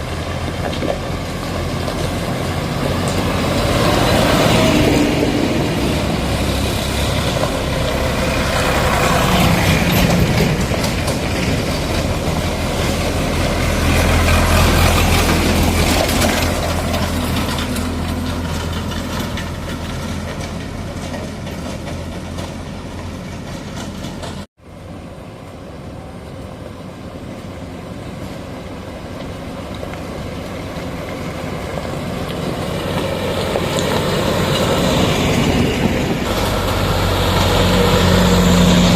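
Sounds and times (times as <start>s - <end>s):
diesel engines running: 0.0s - 38.9s.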